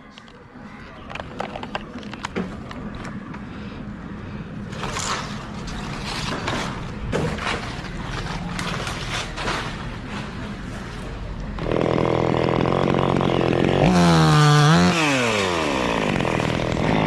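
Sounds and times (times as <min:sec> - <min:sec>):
chainsaw engine running: 0:11.6 - 0:17.0.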